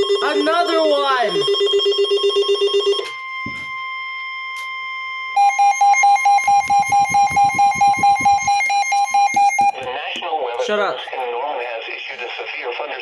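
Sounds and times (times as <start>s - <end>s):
rapid radio alarm beeps: 0.0s - 9.9s
steady warning alarm tone: 0.0s - 9.9s.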